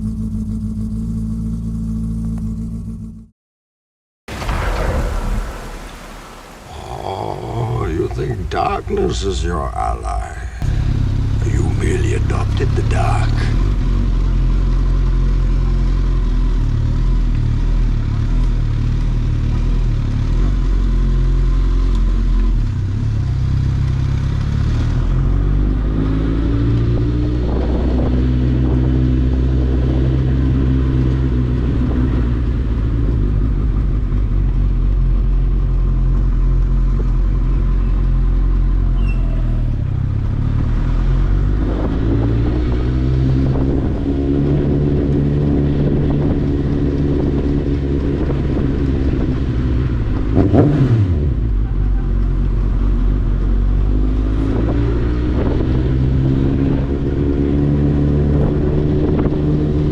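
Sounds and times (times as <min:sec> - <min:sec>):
motorcycle engine idling: 0:00.0 - 0:03.2, 0:10.6 - 0:11.5.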